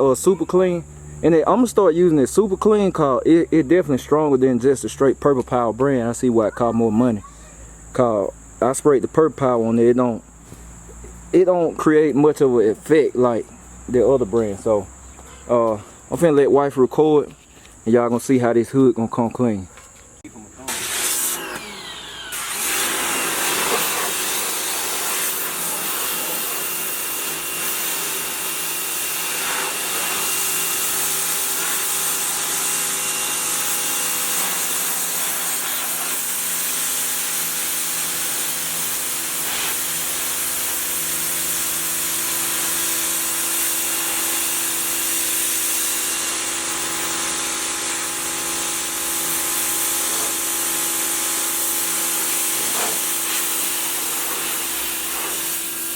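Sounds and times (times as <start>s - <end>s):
pressure washer motor hum: 20.6s - 55.9s
water jet hissing: 20.6s - 55.9s.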